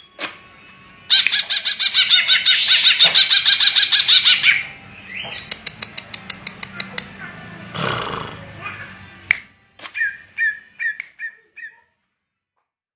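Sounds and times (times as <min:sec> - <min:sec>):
bird singing rapid notes: 0:01.0 - 0:07.0, 0:09.9 - 0:11.8
sharp clicks: 0:05.4 - 0:07.2.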